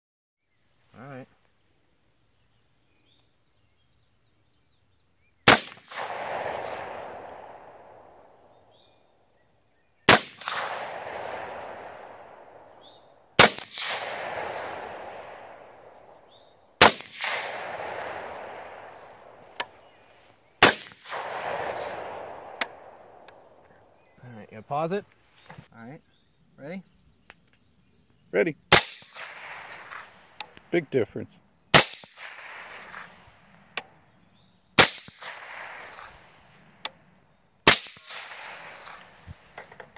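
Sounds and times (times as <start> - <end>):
rifle shots with echo: 5.5 - 9.0, 10.1 - 24.0, 28.7 - 30.6, 31.7 - 34.0, 34.8 - 36.5, 37.6 - 39.9.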